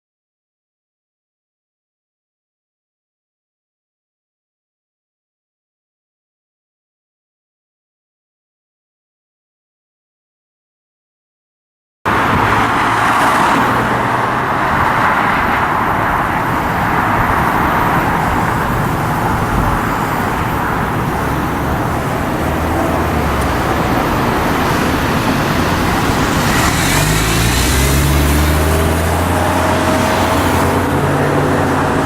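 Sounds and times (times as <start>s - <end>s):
freeway traffic rush: 12.1s - 32.0s
heavy vehicle engine hum: 12.1s - 32.0s.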